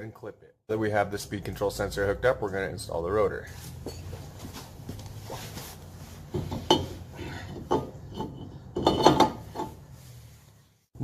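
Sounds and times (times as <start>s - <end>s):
metal brake rotor clinking: 6.3s - 9.8s.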